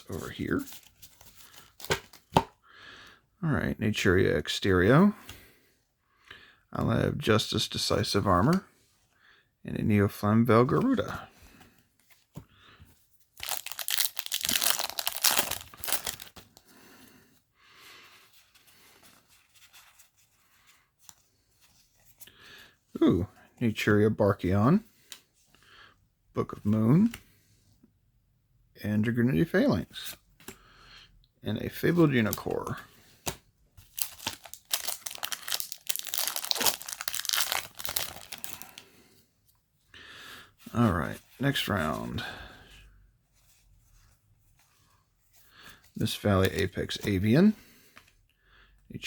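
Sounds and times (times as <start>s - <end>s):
cards rustling: 0.1s - 2.4s, 10.6s - 17.0s, 31.7s - 39.1s
foil wrapper tearing: 13.4s - 16.3s, 34.0s - 38.7s.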